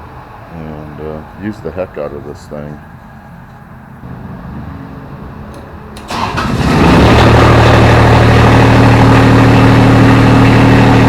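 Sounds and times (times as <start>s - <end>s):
diesel engine cranking and running: 2.9s - 11.0s.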